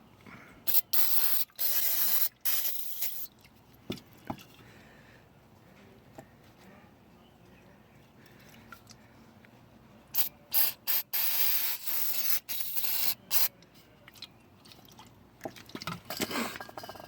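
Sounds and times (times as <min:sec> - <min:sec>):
aerosol spray hissing: 0:10.2 - 0:13.2.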